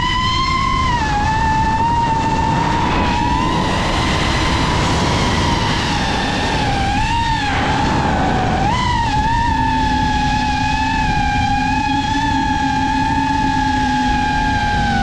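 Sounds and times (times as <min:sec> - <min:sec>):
drone motors whining: 0:00.0 - 0:15.0.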